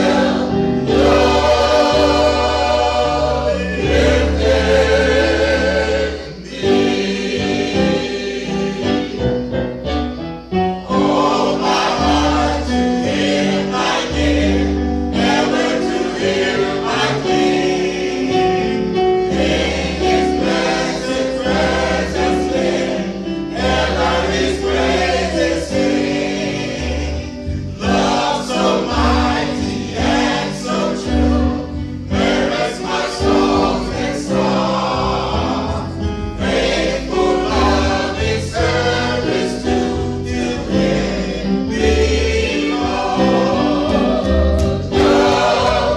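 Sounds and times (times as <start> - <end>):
choir singing gospel: 0.0 - 45.9
instrumental backing: 0.0 - 45.9.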